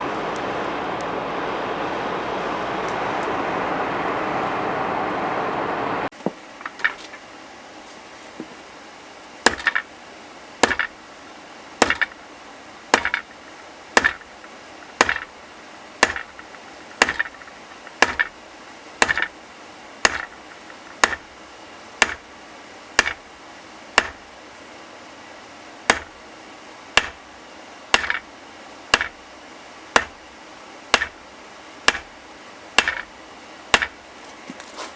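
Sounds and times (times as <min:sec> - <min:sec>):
steady rushing roar: 0:00.0 - 0:06.1
hammer blows on anvil: 0:16.0 - 0:18.4, 0:23.0 - 0:23.3, 0:24.0 - 0:24.3, 0:27.0 - 0:28.3, 0:28.9 - 0:29.4, 0:31.9 - 0:34.2
metallic ring: 0:31.9 - 0:34.2.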